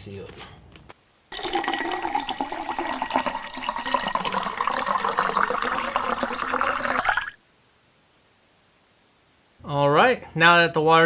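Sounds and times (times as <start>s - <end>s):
tap water running into pot: 1.3s - 7.4s.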